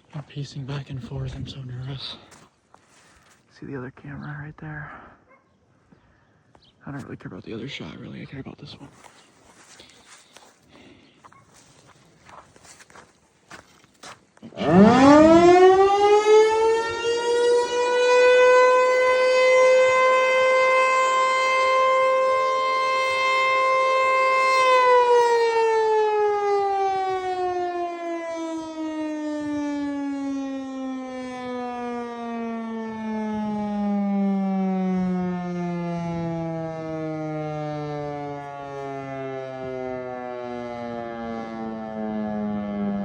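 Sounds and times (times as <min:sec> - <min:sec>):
outdoor warning siren: 0:08.9 - 0:43.0.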